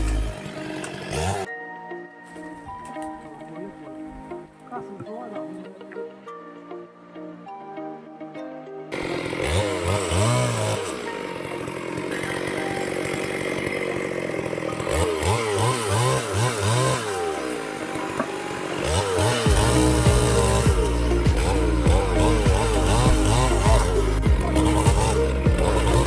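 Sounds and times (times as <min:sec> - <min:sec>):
chainsaw revving: 0:00.0 - 0:01.5, 0:08.9 - 0:26.0.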